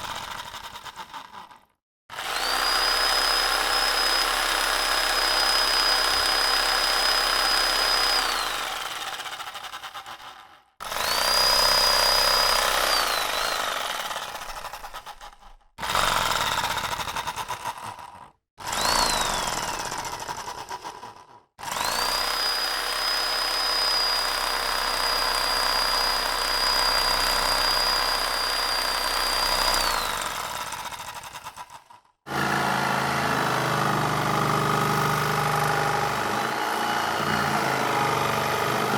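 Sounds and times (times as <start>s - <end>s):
power tool motor whining: 2.1s - 9.0s, 10.9s - 14.4s, 18.7s - 19.8s, 21.7s - 30.7s, 32.3s - 38.9s.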